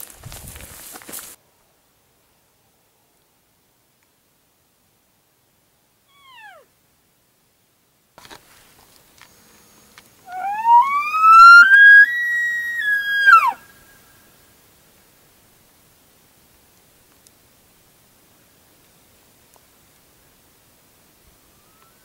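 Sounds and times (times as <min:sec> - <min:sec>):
elk bugling: 0:10.2 - 0:13.7
elk squeal: 0:10.3 - 0:13.6.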